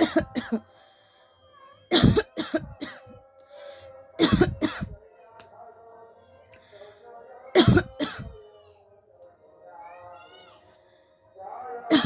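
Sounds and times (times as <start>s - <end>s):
woman coughing: 0.0s - 0.6s, 1.9s - 3.1s, 4.2s - 5.0s, 7.6s - 8.4s.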